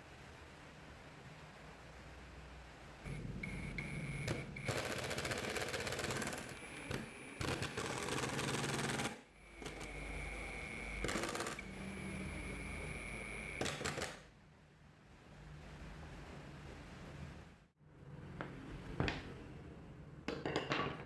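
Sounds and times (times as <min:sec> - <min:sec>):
high motor whine: 0:03.1 - 0:13.7
power tool rattling: 0:04.6 - 0:10.0.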